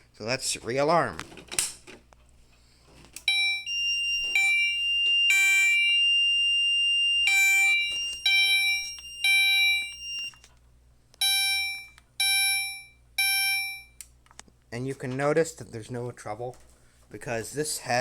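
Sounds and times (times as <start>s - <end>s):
fire alarm chime strokes: 3.3s - 10.5s, 11.2s - 14.0s
steady high tone: 3.3s - 10.5s.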